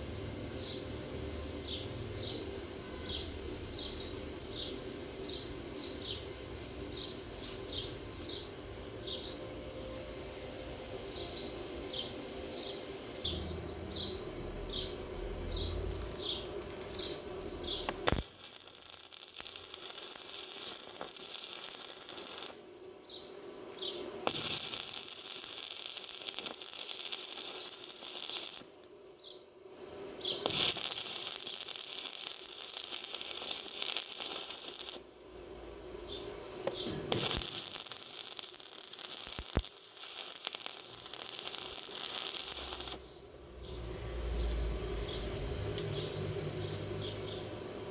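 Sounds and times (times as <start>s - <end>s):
welding arc crackling: 14.7s - 22.7s, 23.8s - 29.0s, 30.2s - 43.8s.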